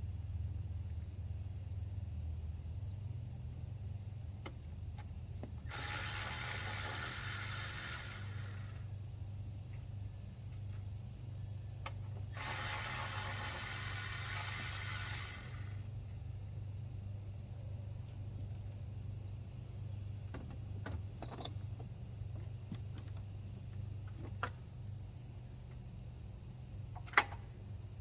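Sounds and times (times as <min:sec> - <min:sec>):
ratchet wrench clicking: 0:12.4 - 0:15.8.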